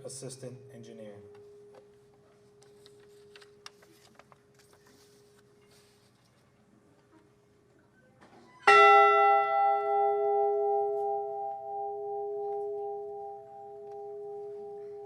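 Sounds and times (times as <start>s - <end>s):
large ship's bell ringing: 8.6s - 15.0s.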